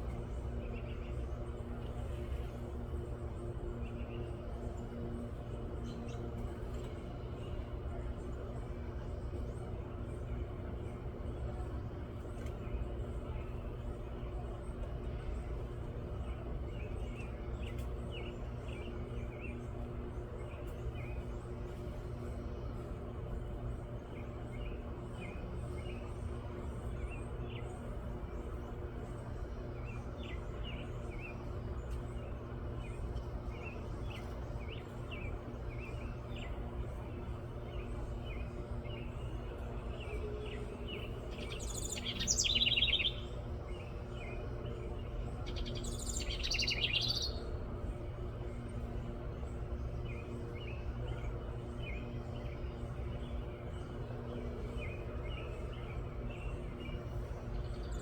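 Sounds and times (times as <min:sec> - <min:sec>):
bubbling trilled birdsong: 0:41.4 - 0:43.3.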